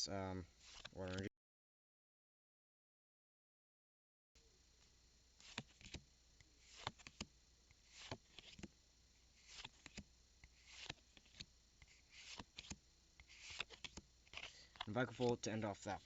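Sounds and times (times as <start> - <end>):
cards sliding over one another: 0.6 - 1.2, 5.4 - 6.0, 6.6 - 8.7, 9.4 - 16.0
small card clicks: 0.7 - 1.3, 6.7 - 7.3, 7.9 - 8.7, 9.4 - 15.4.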